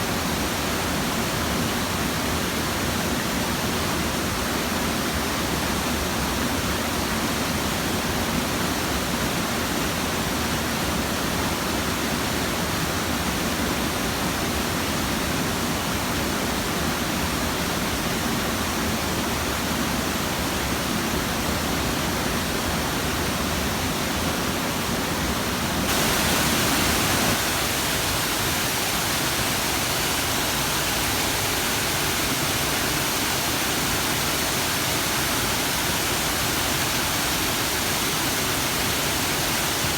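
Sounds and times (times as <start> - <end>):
waterfall rushing: 25.8 - 39.9.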